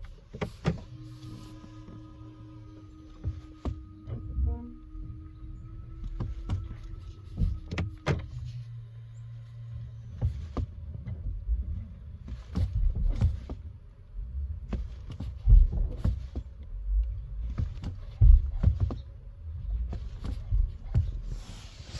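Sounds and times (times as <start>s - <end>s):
car thumps and knocks: 0.0s - 2.1s, 2.8s - 8.6s, 10.1s - 13.9s, 14.5s - 19.2s, 19.8s - 21.6s
low rumble: 0.0s - 21.9s
steady hum: 0.0s - 21.9s.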